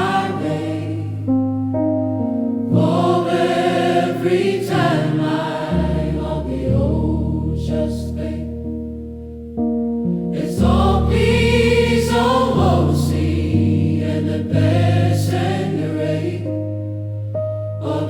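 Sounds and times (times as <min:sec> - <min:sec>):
gospel choir singing: 0:00.0 - 0:01.4, 0:02.7 - 0:08.8, 0:10.3 - 0:16.7, 0:17.8 - 0:18.0
sustained accompanying chords: 0:00.0 - 0:18.0.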